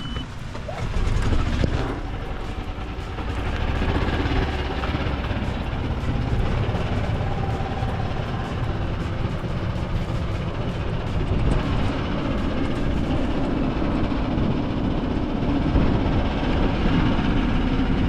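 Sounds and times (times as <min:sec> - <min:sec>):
golf cart rumbling: 0:00.0 - 0:18.0.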